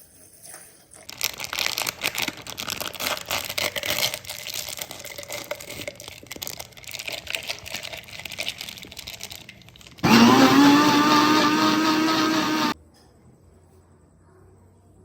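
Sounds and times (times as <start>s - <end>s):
electric blender running: 10.0s - 12.8s.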